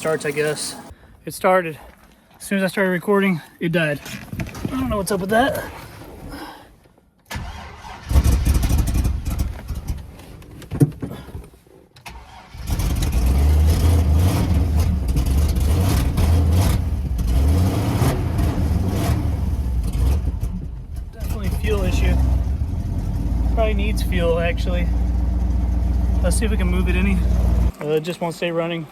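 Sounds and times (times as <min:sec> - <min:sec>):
engine cranking: 0:07.3 - 0:10.5, 0:12.0 - 0:18.8
engine running unevenly: 0:18.1 - 0:28.2.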